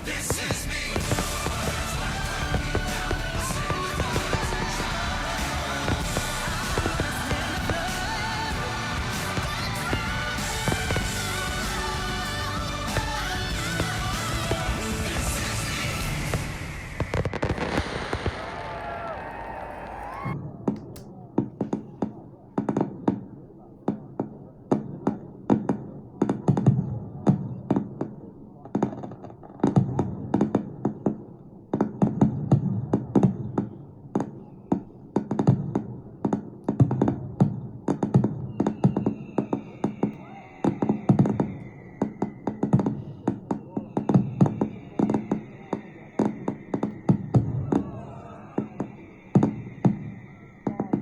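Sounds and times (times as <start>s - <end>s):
firework bangs and booms: 0.0s - 51.0s
long falling whistle: 15.1s - 20.4s, 38.4s - 51.0s.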